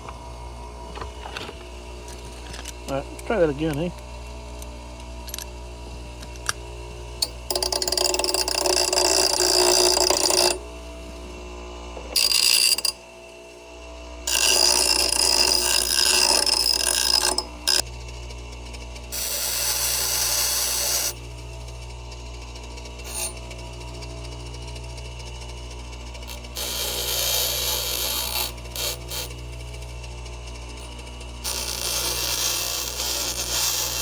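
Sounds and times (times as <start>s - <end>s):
grinder grinding steel: 0.8s - 13.0s, 14.2s - 17.9s, 19.1s - 21.6s, 22.7s - 34.0s.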